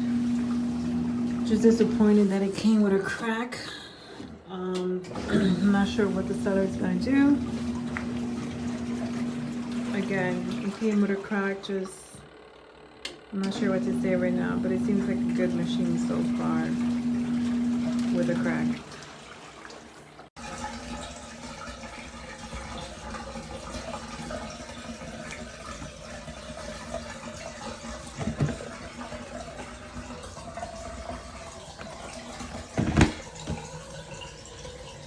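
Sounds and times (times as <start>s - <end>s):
water swishing in washing machine: 0.0s - 12.4s, 13.4s - 35.0s
faint motor hum: 0.0s - 20.3s.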